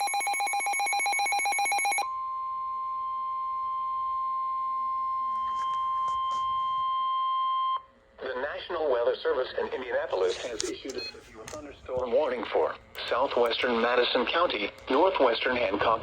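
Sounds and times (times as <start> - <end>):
rapidly pulsing electronic beep: 0.0 - 2.0
steady alarm tone: 0.0 - 7.7.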